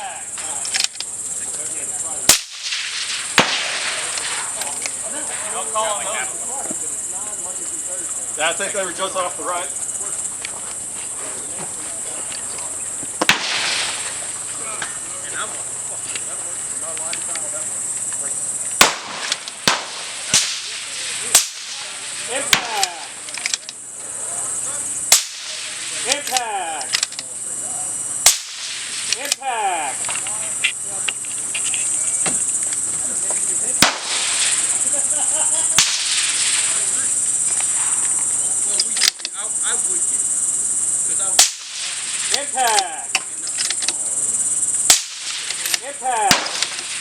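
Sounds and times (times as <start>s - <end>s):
high insect drone: 0.0s - 47.0s
suppressed rifle shots: 2.3s - 4.3s, 13.2s - 14.0s, 18.8s - 20.8s, 33.8s - 34.5s, 46.3s - 47.0s.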